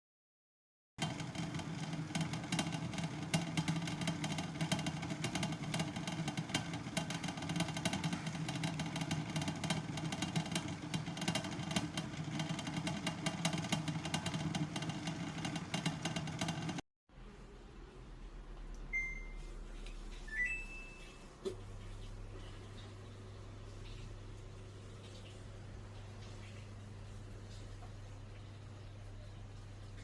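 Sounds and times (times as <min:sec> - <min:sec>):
machine humming and clattering: 0:01.0 - 0:16.8.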